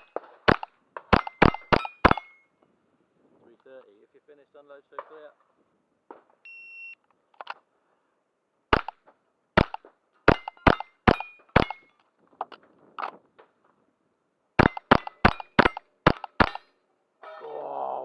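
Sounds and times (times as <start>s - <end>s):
steel target ringing: 1.1s - 2.6s, 10.3s - 12.0s, 14.6s - 15.8s
rifle shots: 9.6s - 11.9s, 14.6s - 16.7s.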